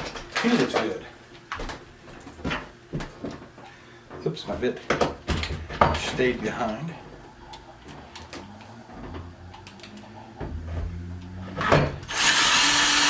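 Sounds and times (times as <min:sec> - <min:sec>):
power driver running: 0:06.2 - 0:13.0.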